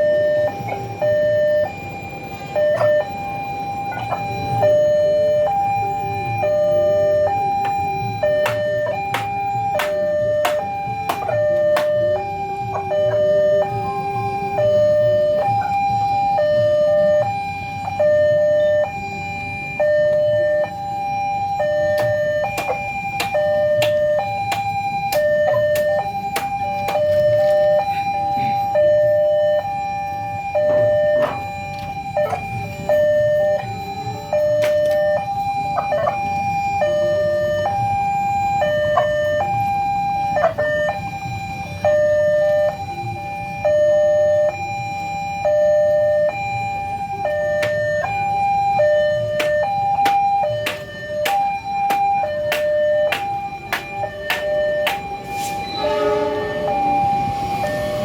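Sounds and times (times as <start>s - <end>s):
level-crossing two-tone alarm: 0.0s - 58.0s.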